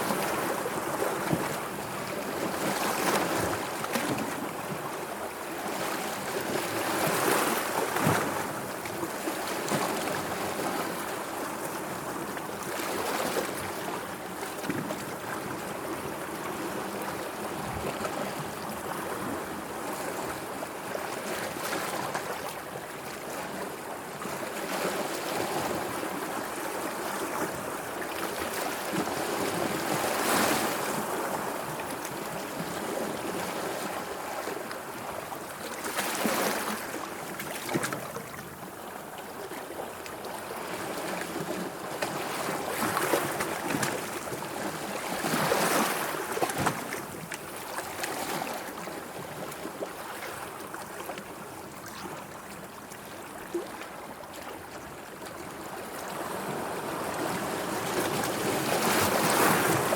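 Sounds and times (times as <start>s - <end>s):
sea water washing and splashing: 42.3s - 47.1s.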